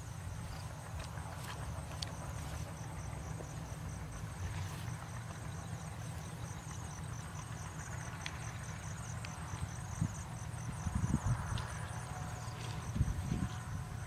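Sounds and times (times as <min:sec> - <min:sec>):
insects trilling: 0:00.0 - 0:14.0
low steady rumble: 0:00.0 - 0:14.0.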